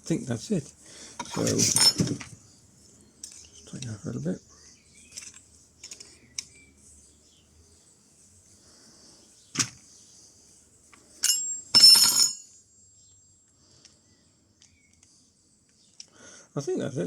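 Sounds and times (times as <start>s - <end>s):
ringing metallic clatter: 11.2s - 12.6s.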